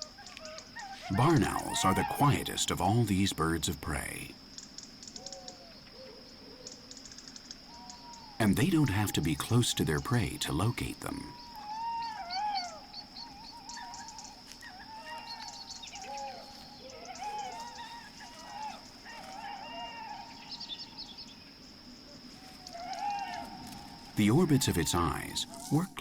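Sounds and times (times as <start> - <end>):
small animal wavering calls: 0.0 - 3.4, 11.2 - 21.4, 22.2 - 26.0.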